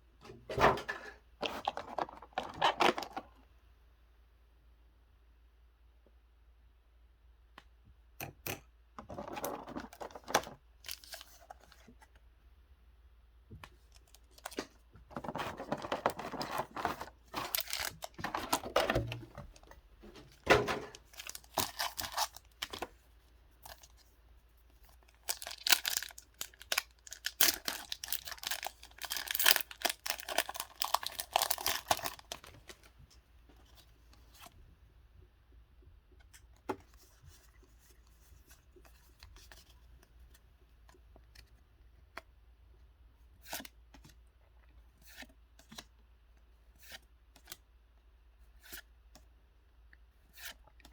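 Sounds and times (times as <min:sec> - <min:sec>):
plastic packaging tearing and crinkling: 0:15.3 - 0:19.1, 0:20.6 - 0:22.8, 0:25.2 - 0:32.8.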